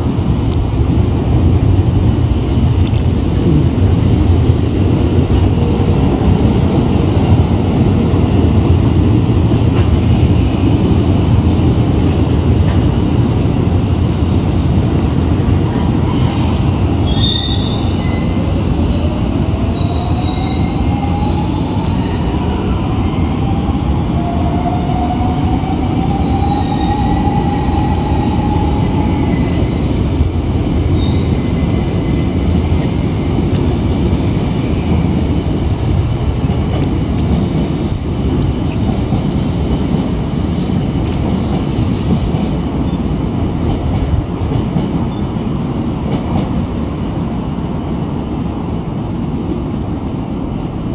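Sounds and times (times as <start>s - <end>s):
train rumble: 0.0s - 50.9s
train wheels squealing on rails: 16.0s - 23.7s, 26.0s - 30.0s, 30.8s - 35.7s, 41.4s - 43.1s.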